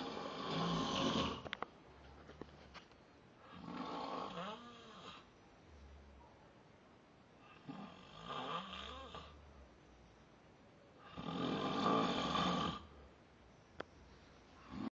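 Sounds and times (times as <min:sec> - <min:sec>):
man snoring: 0:00.0 - 0:01.5, 0:03.5 - 0:05.3, 0:07.6 - 0:09.4, 0:11.0 - 0:12.9.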